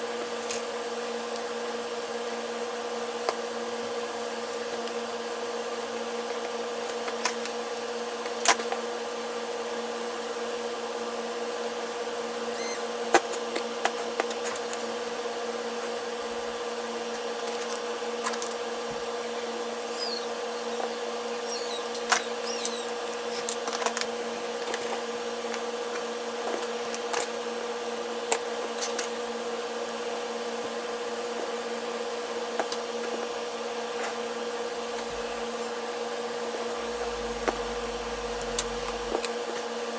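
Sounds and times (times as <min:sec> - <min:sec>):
steady machine hum: 0:34.7 - 0:39.3.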